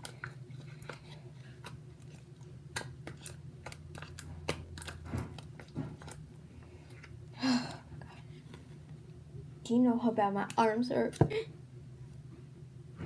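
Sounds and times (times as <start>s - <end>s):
slime squelching and clicking: 0.0s - 6.2s.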